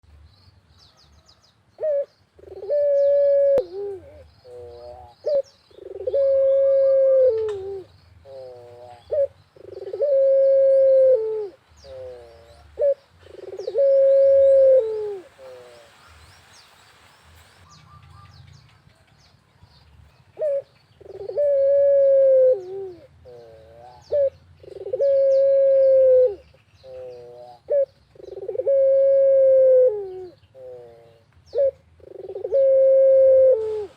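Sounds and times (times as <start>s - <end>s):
small birds chirping: 0.1s - 10.3s, 11.3s - 14.1s, 14.7s - 21.8s, 22.5s - 28.9s, 30.0s - 32.6s
dove cooing: 1.8s - 16.0s, 20.4s - 33.9s.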